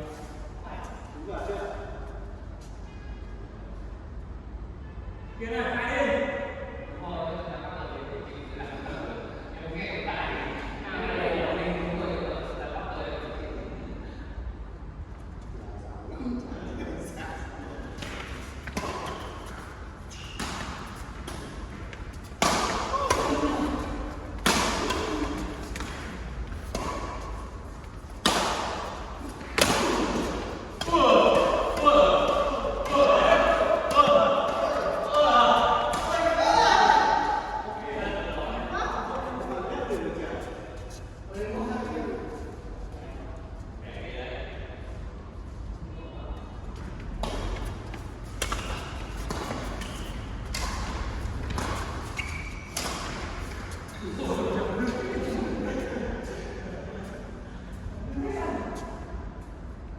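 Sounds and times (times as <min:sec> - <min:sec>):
rackets hitting shuttlecock in hall: 0:17.3 - 0:41.0, 0:46.7 - 0:57.8.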